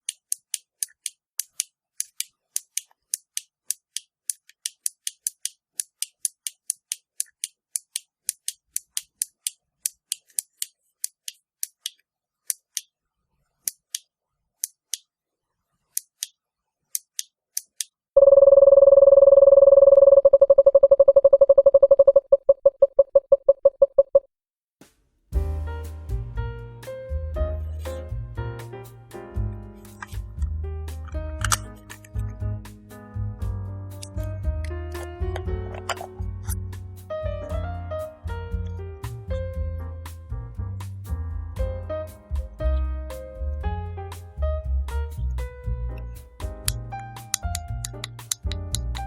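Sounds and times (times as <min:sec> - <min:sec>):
electronic beep tone: 0:18.2 - 0:24.3.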